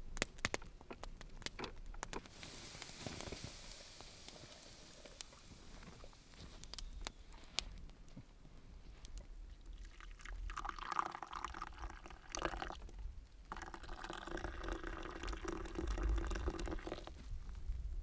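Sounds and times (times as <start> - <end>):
liquid pouring: 9.7 - 12.9, 13.5 - 17.1.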